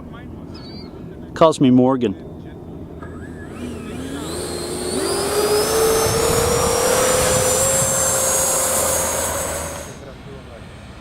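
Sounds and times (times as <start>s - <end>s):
jet fan whine: 0.0s - 11.0s
fan airflow rush: 3.0s - 11.0s.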